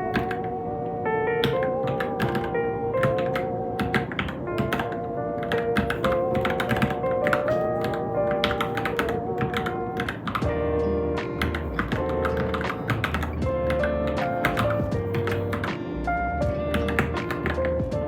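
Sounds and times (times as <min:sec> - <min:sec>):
mechanical keyboard typing: 0:00.0 - 0:00.5, 0:01.4 - 0:10.5, 0:11.4 - 0:15.8, 0:16.7 - 0:17.8
background music: 0:00.0 - 0:18.0.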